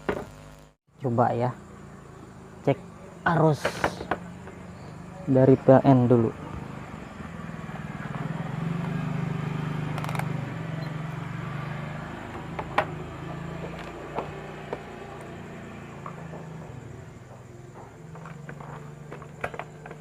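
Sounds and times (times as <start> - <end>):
sharp clicks: 9.9 - 10.3.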